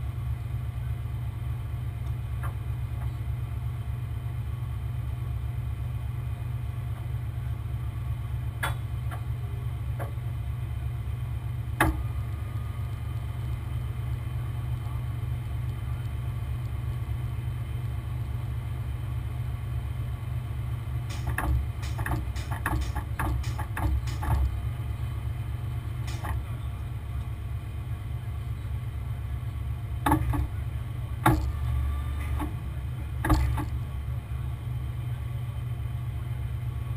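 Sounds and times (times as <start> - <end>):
large engine droning: 0.0 - 36.9
clanks and clicks: 21.0 - 24.6, 26.0 - 26.6, 30.0 - 30.6, 31.2 - 32.6, 33.2 - 33.8
sharp knocks: 21.1 - 24.6, 26.1 - 26.5, 30.0 - 30.5, 31.2 - 31.6, 33.2 - 33.8.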